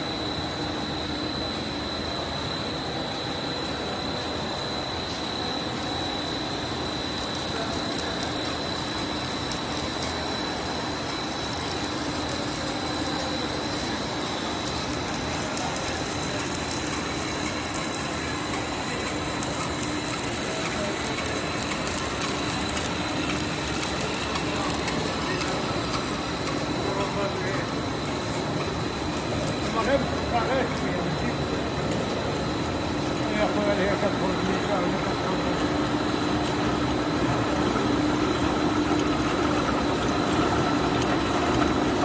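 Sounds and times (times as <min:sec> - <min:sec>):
high-pitched machine whine: 0:00.0 - 0:42.0.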